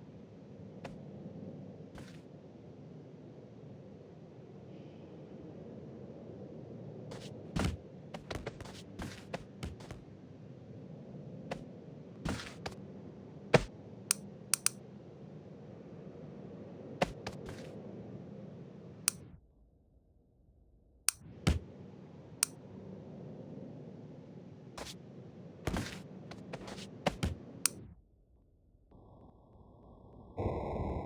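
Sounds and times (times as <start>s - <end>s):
sharp clicks and knocks: 14.6s - 14.8s.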